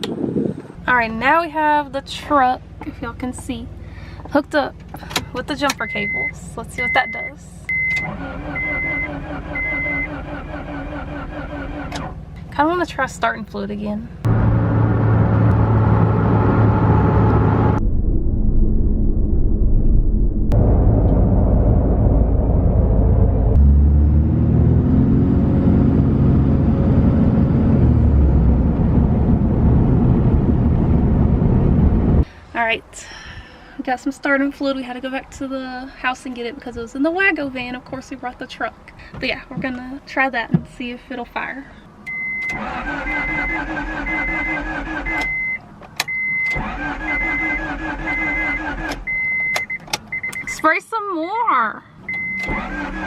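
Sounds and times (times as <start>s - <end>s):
vehicle low rumble: 0.0s - 50.7s
engine cranking on starter: 7.7s - 12.4s, 42.1s - 50.1s, 52.1s - 53.0s.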